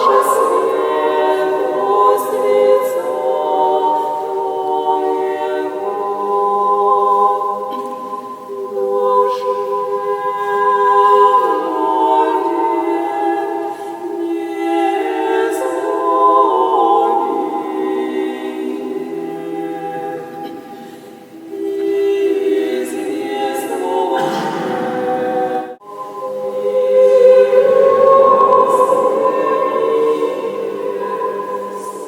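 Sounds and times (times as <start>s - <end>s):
church choir chanting in harmony: 0.0s - 32.0s.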